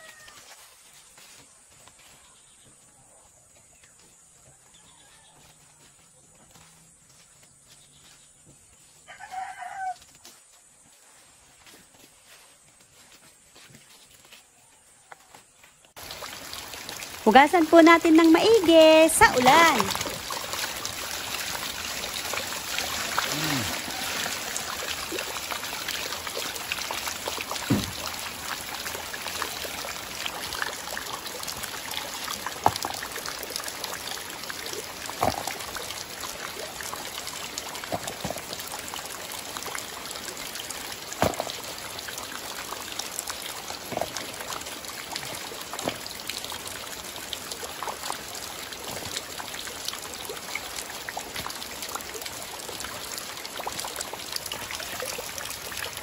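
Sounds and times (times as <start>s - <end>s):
water trickling and pouring: 16.0s - 56.0s.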